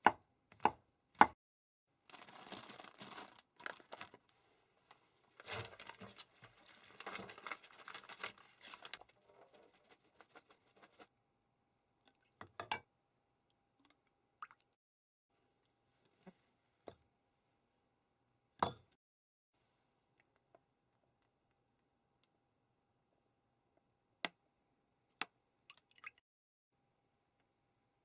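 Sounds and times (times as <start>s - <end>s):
plastic wrap crinkling: 2.1s - 4.3s, 5.2s - 11.1s.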